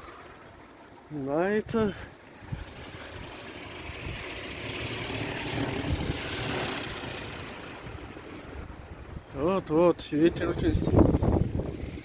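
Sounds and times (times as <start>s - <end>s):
wind howling: 2.4s - 9.4s.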